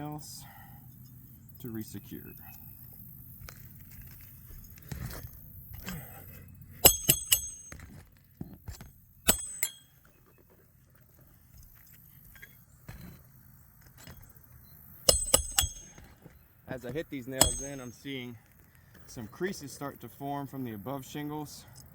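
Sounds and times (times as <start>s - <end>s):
hatchet striking roofing nails: 6.8s - 10.0s, 15.1s - 18.0s.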